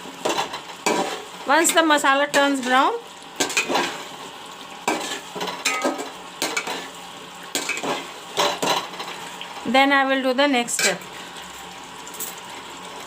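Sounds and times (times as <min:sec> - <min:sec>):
food sizzling in hot oil: 0:00.0 - 0:13.0
spoon scraping a pan: 0:00.2 - 0:01.8, 0:03.4 - 0:04.2, 0:04.9 - 0:07.0, 0:07.6 - 0:09.2, 0:10.8 - 0:11.1.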